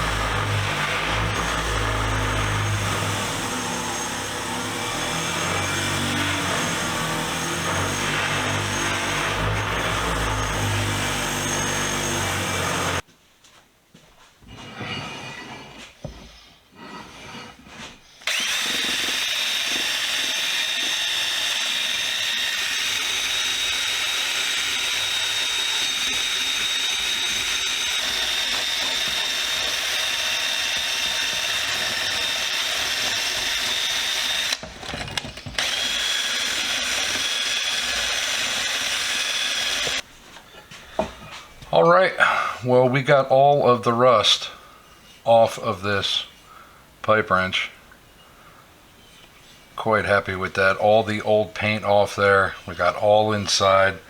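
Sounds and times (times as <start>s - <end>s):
wire wheel scrubbing rust: 18.3s - 34.6s.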